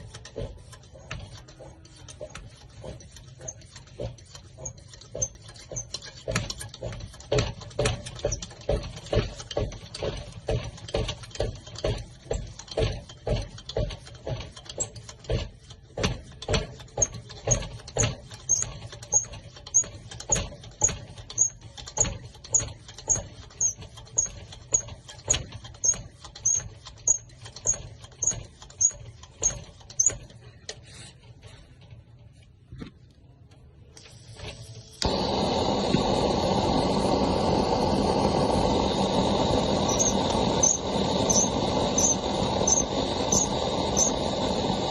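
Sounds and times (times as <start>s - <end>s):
hand air pump strokes: 0.0s - 31.9s, 34.0s - 44.9s
squeaky tick: 18.4s - 30.3s.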